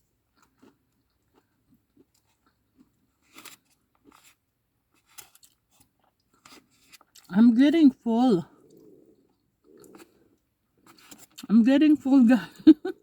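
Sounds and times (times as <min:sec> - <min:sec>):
crunchy food chewing: 0:00.0 - 0:07.3, 0:08.5 - 0:11.5.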